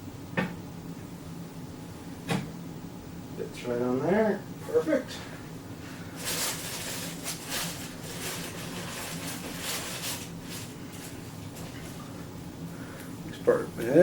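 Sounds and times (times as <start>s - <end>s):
packaging rustling: 6.2s - 11.9s.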